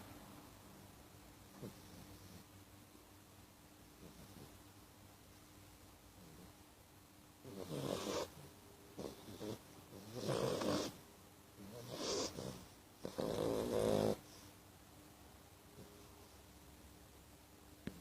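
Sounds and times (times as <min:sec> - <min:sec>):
pet snoring loudly: 0:07.4 - 0:11.0, 0:11.6 - 0:14.4.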